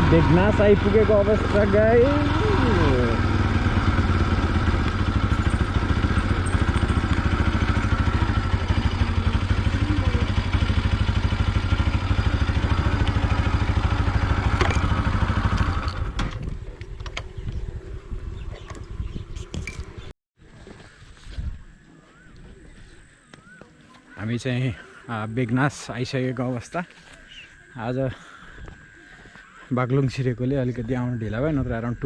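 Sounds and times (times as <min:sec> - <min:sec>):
motorcycle engine running: 0:00.0 - 0:20.1.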